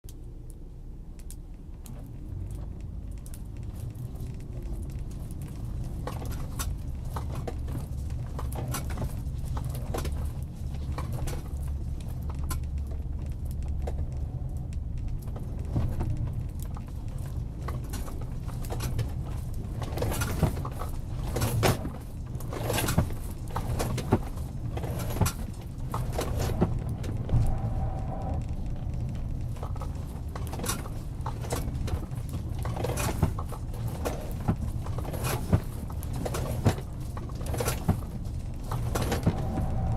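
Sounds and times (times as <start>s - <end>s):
engine and road drone: 0.1s - 39.9s.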